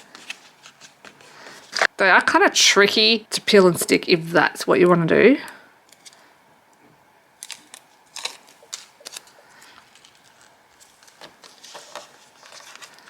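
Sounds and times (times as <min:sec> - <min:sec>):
crackling of paper and plastic: 0:00.0 - 0:01.9, 0:07.4 - 0:13.0.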